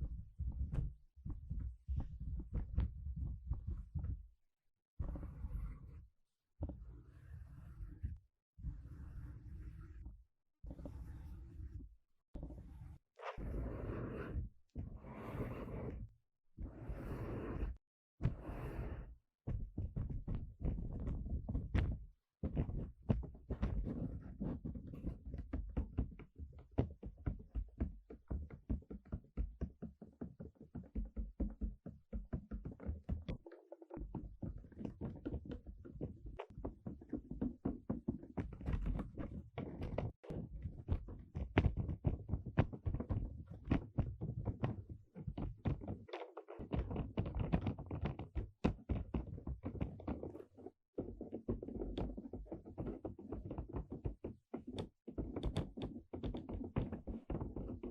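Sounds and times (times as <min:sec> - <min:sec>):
tapping on hard object: 0:51.0 - 0:57.9.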